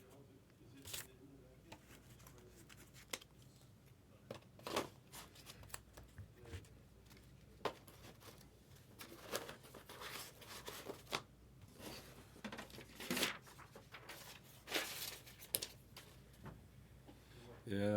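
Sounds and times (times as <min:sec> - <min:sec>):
trading cards and packaging rustling: 0:04.6 - 0:16.2.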